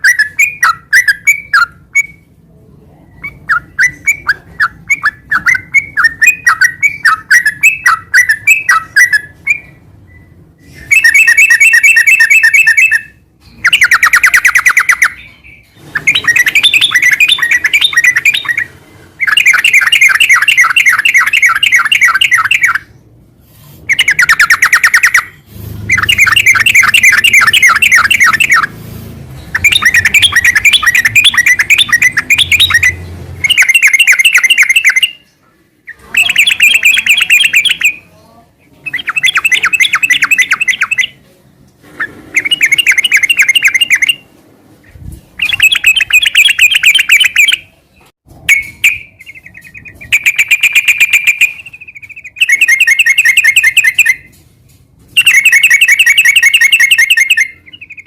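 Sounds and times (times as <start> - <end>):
bulbul singing trilled notes: 16.0 - 22.9, 23.9 - 28.7, 29.5 - 38.1, 48.5 - 54.3.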